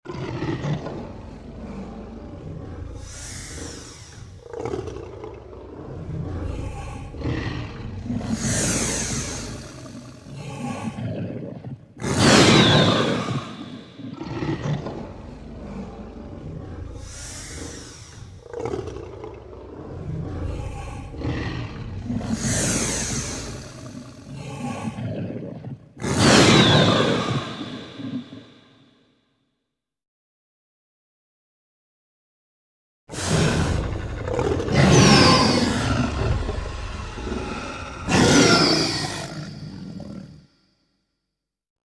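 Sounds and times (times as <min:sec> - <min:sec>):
dinosaur growl: 0:00.0 - 0:28.7, 0:33.1 - 0:40.5
dinosaur roar: 0:00.0 - 0:28.7, 0:33.1 - 0:40.5
breathy hissing: 0:02.7 - 0:04.4, 0:06.3 - 0:10.9, 0:16.8 - 0:18.4, 0:19.8 - 0:25.0, 0:33.2 - 0:40.2.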